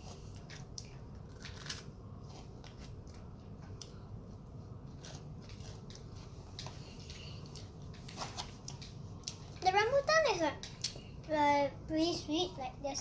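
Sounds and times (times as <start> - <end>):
person chewing crunchy food: 0.0 - 3.9, 4.8 - 9.5
low steady hum: 0.0 - 13.0.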